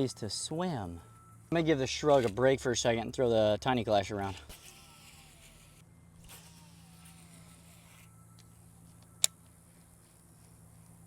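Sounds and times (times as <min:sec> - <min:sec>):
steady low hum: 0:00.0 - 0:11.0
fishing reel whine: 0:04.2 - 0:09.5.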